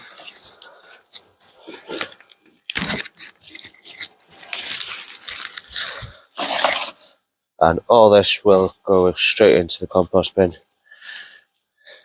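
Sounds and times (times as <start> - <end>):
plant stems snapping and rustling: 0.1 - 6.1.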